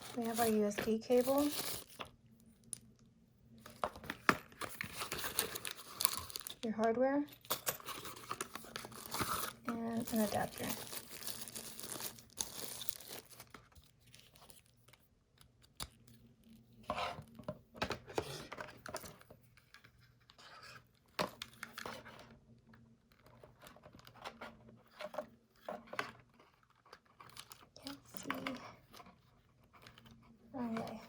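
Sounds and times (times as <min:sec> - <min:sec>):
plastic packaging rustling and tearing: 0:00.0 - 0:03.0, 0:03.6 - 0:15.0.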